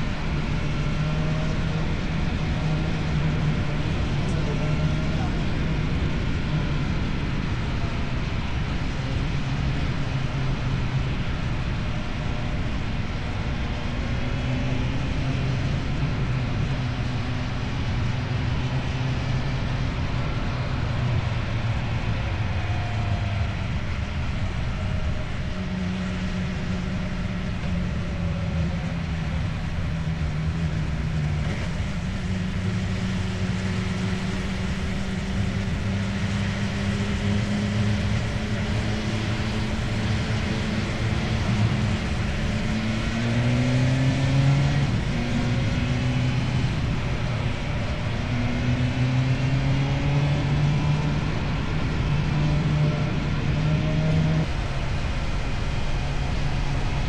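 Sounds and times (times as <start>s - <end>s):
wind and road noise: 0.0s - 57.0s
motorcycle engine running: 15.0s - 49.7s.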